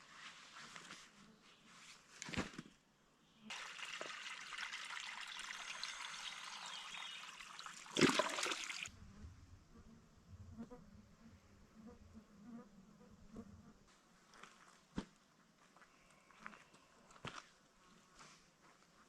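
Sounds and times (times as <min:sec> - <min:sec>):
water trickling: 0:03.5 - 0:08.9.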